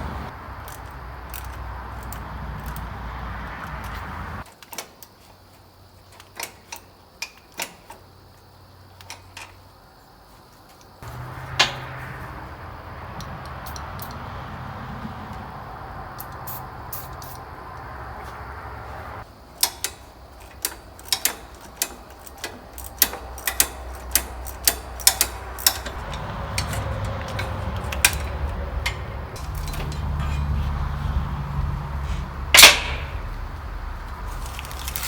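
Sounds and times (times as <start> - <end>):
metallic clinks of hand tools: 19.6 - 30.8, 32.5 - 33.2.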